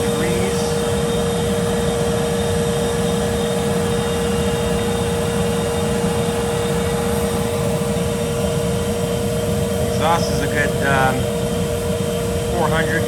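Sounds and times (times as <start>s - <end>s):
furnace burner roaring: 0.0s - 13.0s
steady hum: 0.0s - 13.0s.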